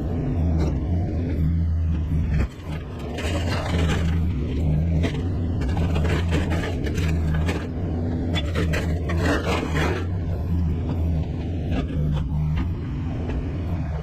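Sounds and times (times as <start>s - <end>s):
engine running steadily: 0.0s - 14.0s
scrapes and knocks: 2.4s - 10.2s.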